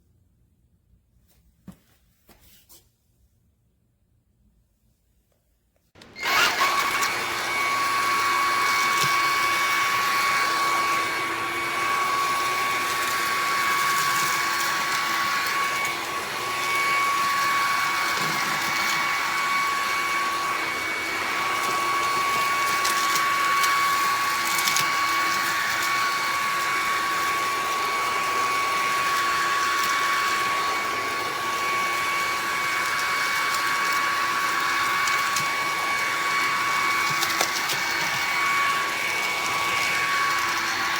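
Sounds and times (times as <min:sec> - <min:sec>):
stick vacuum running: 0:06.0 - 0:40.9.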